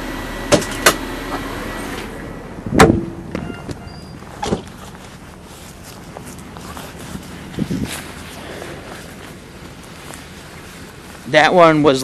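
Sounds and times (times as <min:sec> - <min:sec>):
vehicle door slamming: 0:02.7 - 0:04.7.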